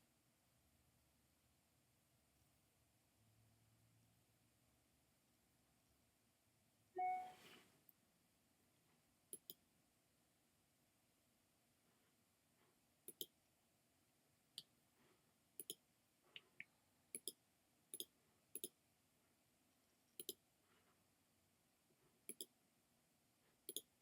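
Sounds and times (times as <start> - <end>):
computer mouse clicking: 9.4 - 9.6, 13.1 - 13.3, 17.2 - 18.8, 20.2 - 20.4, 22.3 - 22.5, 23.7 - 23.9.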